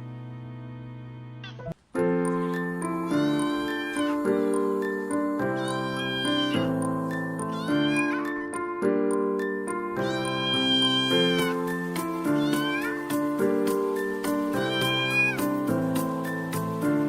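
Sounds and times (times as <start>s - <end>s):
background music with sustained chords: 0.0s - 17.0s
cat meowing: 1.4s - 1.8s, 2.4s - 4.4s, 5.5s - 6.8s, 7.4s - 8.6s, 9.9s - 13.2s, 14.4s - 15.5s.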